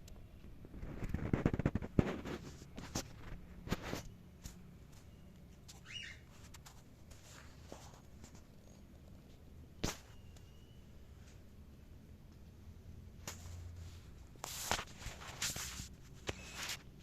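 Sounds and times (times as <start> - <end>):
cockatiel chirp: 5.7 - 6.3.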